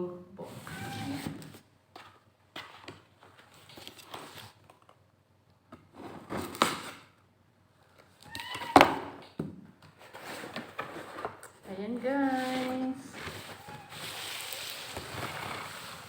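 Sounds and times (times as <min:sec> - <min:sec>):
packaging rustling and scraping: 0:00.5 - 0:04.7, 0:10.0 - 0:16.0.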